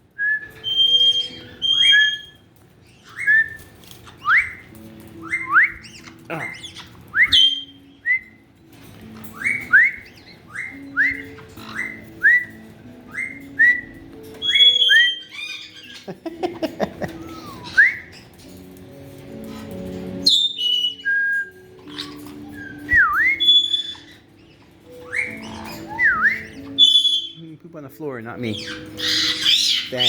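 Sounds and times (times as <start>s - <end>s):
soft background music: 0.0s - 30.0s
parrot squawking: 0.6s - 8.0s, 9.0s - 18.5s, 19.2s - 27.4s, 28.4s - 30.0s
parrot rising whistle: 20.3s - 24.1s.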